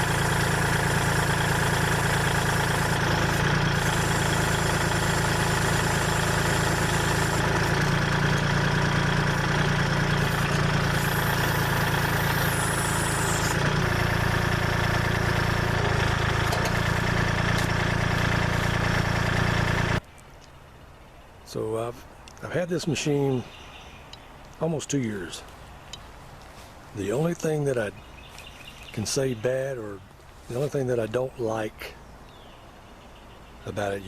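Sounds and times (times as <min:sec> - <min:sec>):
tractor diesel engine running: 0:00.0 - 0:20.0.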